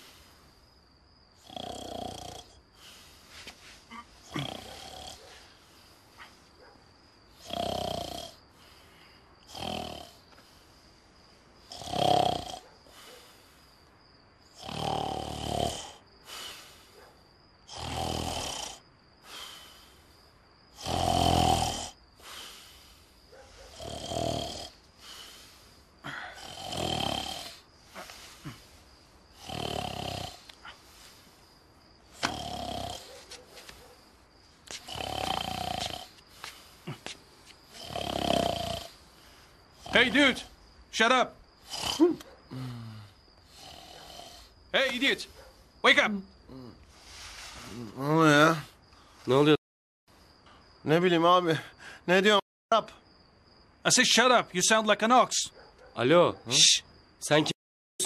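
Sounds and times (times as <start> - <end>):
man snoring loudly: 1.4 - 2.6, 4.2 - 5.3, 7.3 - 8.4, 9.4 - 10.2, 11.6 - 12.6, 14.5 - 16.0, 17.6 - 19.7, 20.7 - 22.8, 23.7 - 25.3, 26.0 - 28.7, 29.3 - 31.1, 32.1 - 33.1, 34.7 - 36.2, 37.7 - 39.0, 39.7 - 40.6, 41.6 - 44.6, 46.5 - 48.8.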